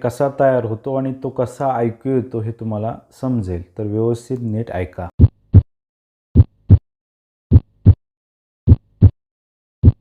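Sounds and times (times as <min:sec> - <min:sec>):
heartbeat lub-dub: 0:05.2 - 0:05.7, 0:06.4 - 0:06.8, 0:07.5 - 0:08.0, 0:08.7 - 0:09.2.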